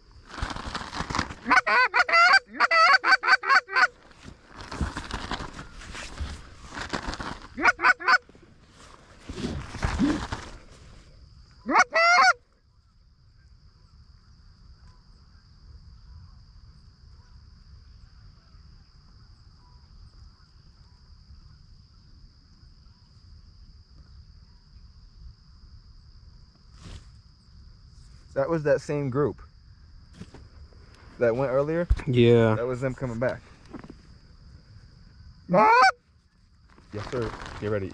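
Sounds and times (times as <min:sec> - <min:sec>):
insect trill: 0:00.0 - 0:37.9
canada goose honking: 0:01.4 - 0:04.0, 0:07.6 - 0:08.2, 0:11.7 - 0:12.4, 0:35.5 - 0:36.0.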